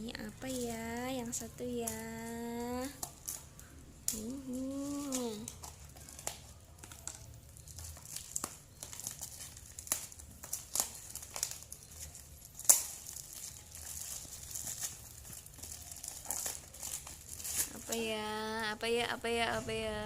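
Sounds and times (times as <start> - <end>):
packaging crinkling and tearing: 0.5 - 18.2.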